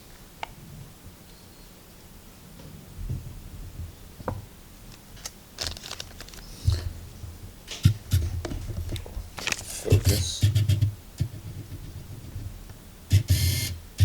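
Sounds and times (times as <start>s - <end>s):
rustling: 5.0s - 10.7s.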